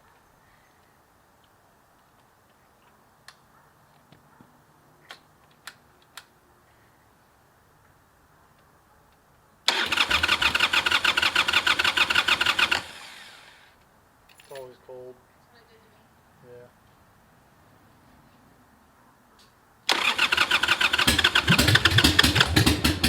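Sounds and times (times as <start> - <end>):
motorcycle engine starting: 9.7 - 13.7, 19.9 - 23.0.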